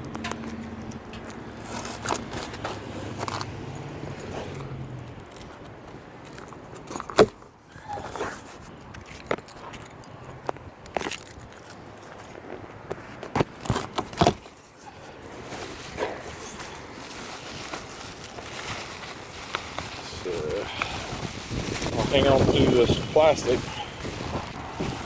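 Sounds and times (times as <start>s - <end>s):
packaging crackling and rustling: 0.0s - 7.2s, 13.0s - 25.0s.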